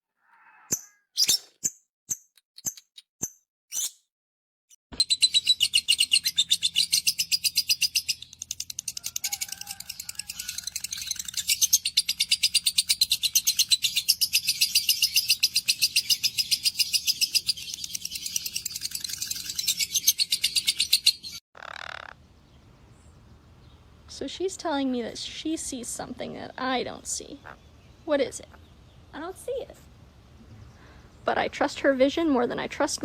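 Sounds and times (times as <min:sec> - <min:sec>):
parrot chirping rapidly: 0:00.3 - 0:01.7, 0:05.0 - 0:22.2.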